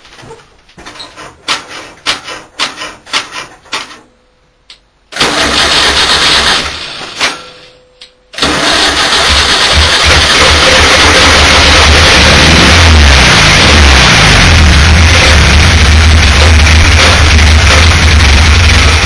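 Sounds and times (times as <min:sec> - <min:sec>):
engine starting and running: 0:05.1 - 0:07.3, 0:08.4 - 0:19.0
engine clicks and knocks: 0:08.4 - 0:19.0.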